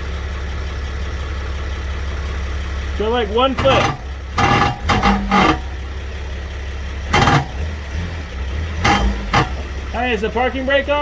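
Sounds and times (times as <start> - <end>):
van engine idling: 0.0 - 4.9
short knocks: 3.6 - 5.8, 7.1 - 7.7, 8.8 - 9.8.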